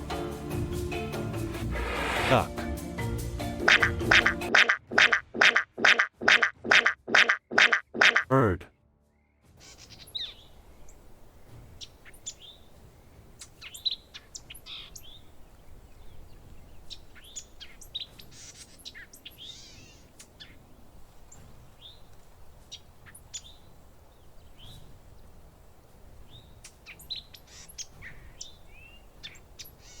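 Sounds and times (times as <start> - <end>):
sparrows chirping: 9.6 - 25.4, 26.2 - 30.0.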